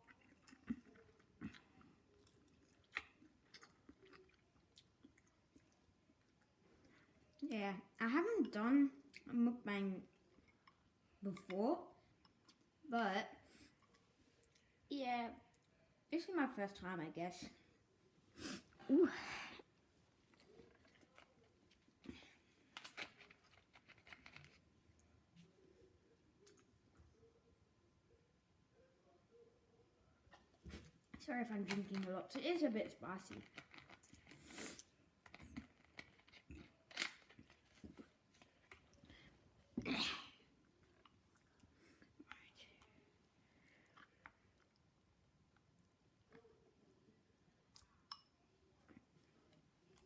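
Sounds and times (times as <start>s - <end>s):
mouth sounds eating noodles: 0.0s - 6.6s
person chewing noodles: 0.0s - 7.4s, 10.1s - 11.1s, 33.3s - 39.1s, 40.8s - 42.3s.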